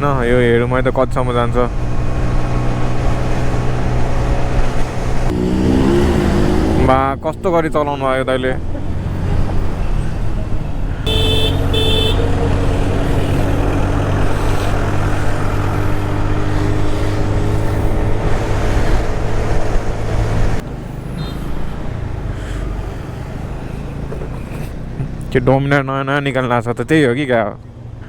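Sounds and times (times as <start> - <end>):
motor scooter engine hum: 0.0 - 25.7
road noise: 0.0 - 28.0
short horn beeps: 11.0 - 12.3.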